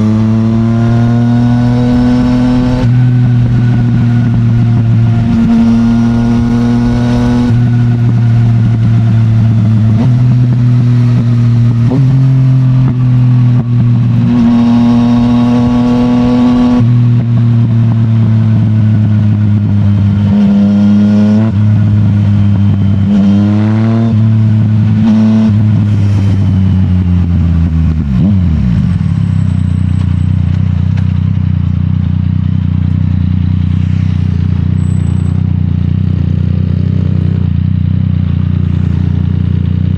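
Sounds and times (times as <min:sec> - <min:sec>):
motorcycle engine revving: 0:00.0 - 0:39.9
motorcycle engine idling: 0:29.0 - 0:39.9.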